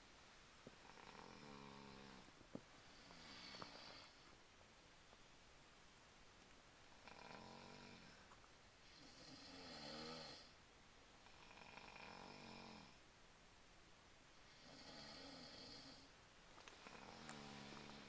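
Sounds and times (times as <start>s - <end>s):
faint rasping snoring: 0.8s - 4.2s, 6.9s - 10.6s, 11.2s - 13.0s, 14.5s - 16.1s, 16.8s - 18.0s.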